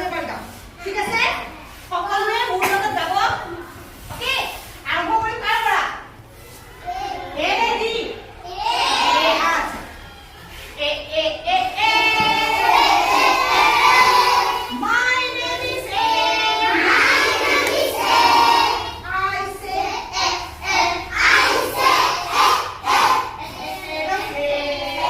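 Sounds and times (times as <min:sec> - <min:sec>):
children singing together: 0:11.4 - 0:25.0.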